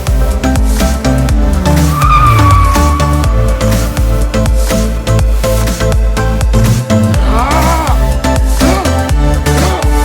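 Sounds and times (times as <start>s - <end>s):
high tone sliding downward: 0.2s - 4.9s.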